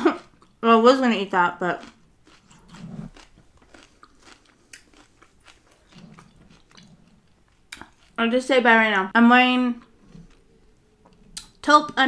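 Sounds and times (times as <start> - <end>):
chewing crunchy food: 0.0 - 8.2, 9.1 - 12.0
wet mouth clicks: 7.7 - 8.1, 11.1 - 11.6.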